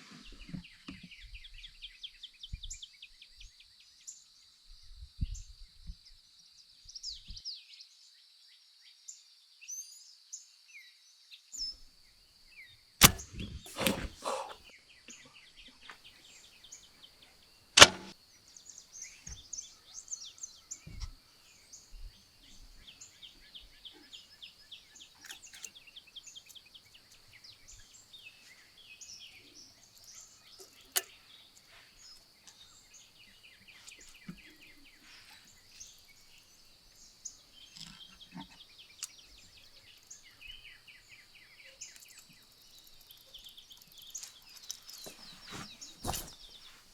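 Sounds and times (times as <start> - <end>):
birds chirping: 12.5 - 46.9
faint snap: 13.0 - 14.6
loud crack: 13.0 - 14.6.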